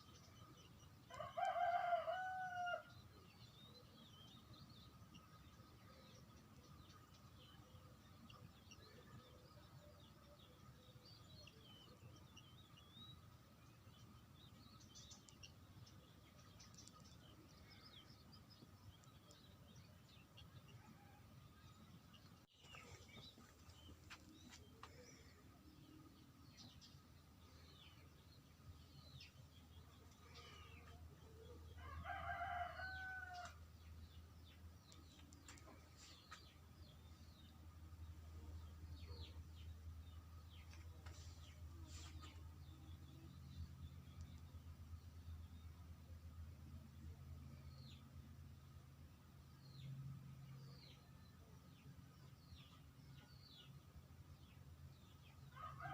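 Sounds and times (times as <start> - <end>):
low background noise: 0.0 - 55.9
small birds chirping: 0.0 - 55.9
rooster crowing: 1.1 - 2.9, 31.8 - 33.6, 55.5 - 55.9.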